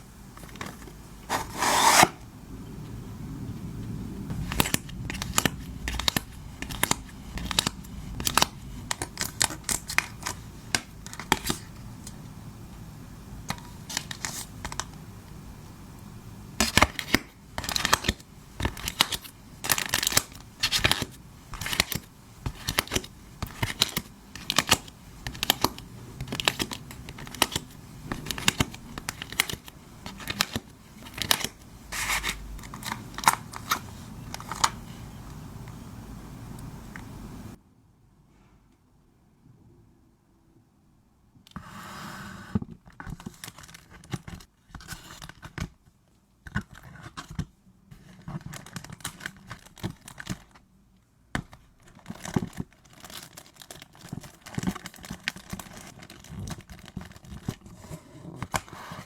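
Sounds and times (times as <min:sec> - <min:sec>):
plastic sleeves crinkling: 0:04.3 - 0:12.2, 0:16.6 - 0:35.8, 0:48.0 - 0:50.6, 0:51.5 - 0:57.8.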